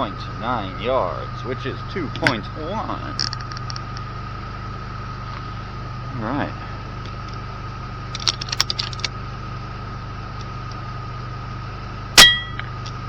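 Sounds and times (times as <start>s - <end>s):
steady hum: 0.0s - 13.0s
small metallic clicks: 3.2s - 4.1s, 8.1s - 9.1s
brief metallic ring: 12.2s - 12.7s.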